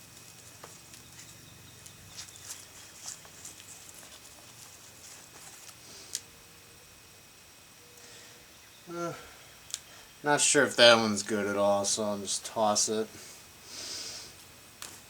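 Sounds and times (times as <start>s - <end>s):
hands digging through potting soil: 0.0s - 6.2s.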